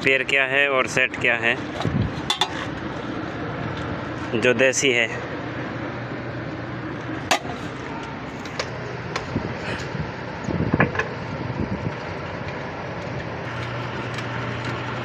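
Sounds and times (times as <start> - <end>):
generator running: 0.0 - 15.0.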